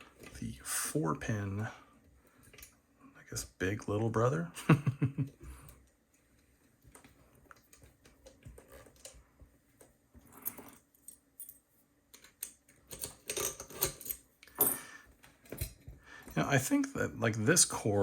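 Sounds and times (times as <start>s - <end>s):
metal clicks of padlocks and picks: 11.4s - 14.6s.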